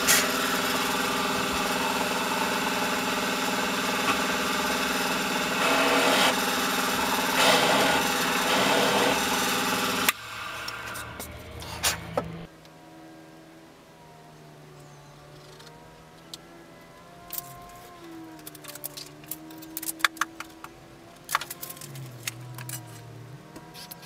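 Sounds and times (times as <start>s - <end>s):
power tool motor running: 0.0s - 12.5s.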